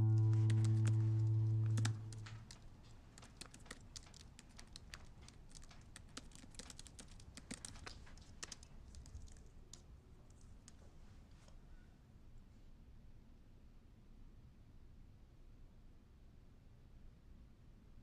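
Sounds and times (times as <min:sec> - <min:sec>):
held music chord: 0:00.0 - 0:02.4.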